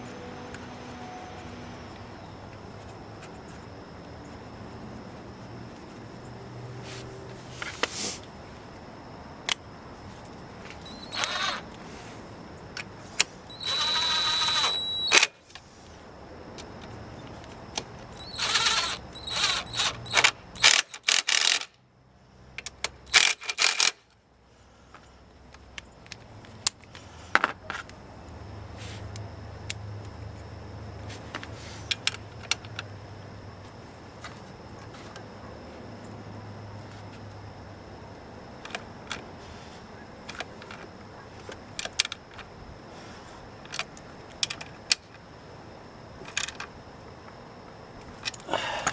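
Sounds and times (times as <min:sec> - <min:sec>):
rapid ratchet clicking: 0:18.2 - 0:21.7, 0:23.1 - 0:24.0.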